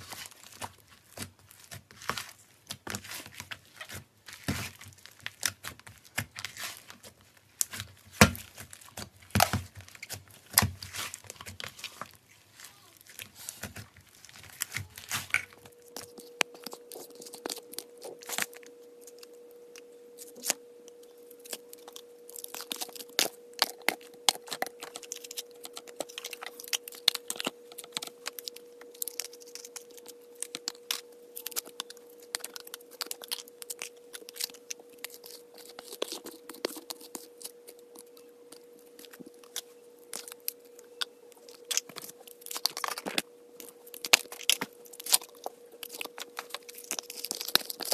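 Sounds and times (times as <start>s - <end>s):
slime squeezed popping and crackling: 21.4s - 47.9s.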